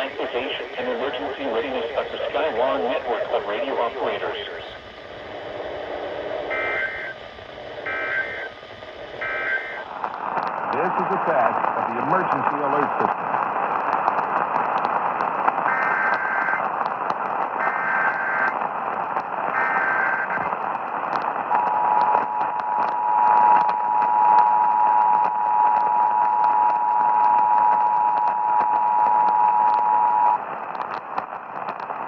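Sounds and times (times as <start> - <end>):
radio static and crackle: 0.0 - 32.0
screechy data tones: 6.5 - 7.2, 7.8 - 8.6, 9.2 - 9.9, 15.7 - 16.6, 17.6 - 18.5, 19.6 - 20.5.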